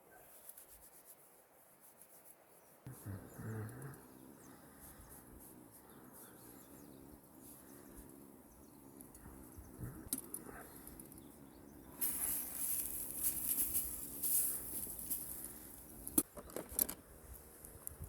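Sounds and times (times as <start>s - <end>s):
fire hissing: 11.8s - 16.1s
campfire crackling: 11.8s - 16.2s
fire popping: 11.9s - 16.2s.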